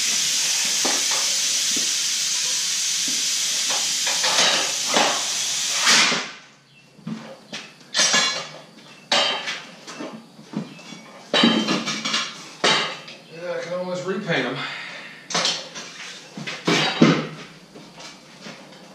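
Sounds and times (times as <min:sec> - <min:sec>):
air hissing: 0:00.0 - 0:06.4.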